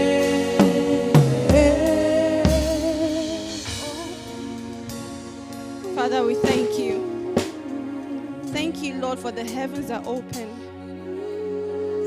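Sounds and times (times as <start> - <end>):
sustained keyboard chords: 0.0 - 12.0
drum hits: 0.6 - 7.0
singer holding vibrato note: 5.8 - 8.9.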